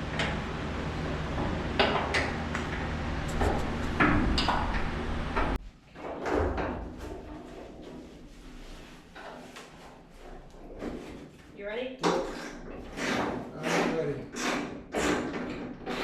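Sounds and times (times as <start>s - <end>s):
steady low hum: 0.0s - 6.0s.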